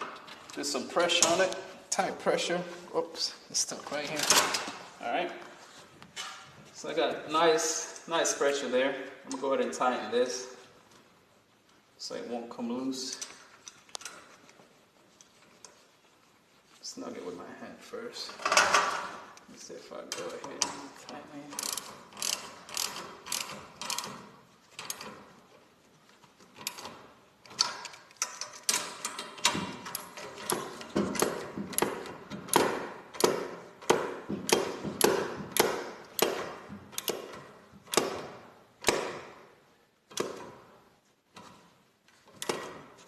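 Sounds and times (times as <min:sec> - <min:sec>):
ratchet wrench clicking: 0:21.6 - 0:24.2, 0:37.0 - 0:37.3.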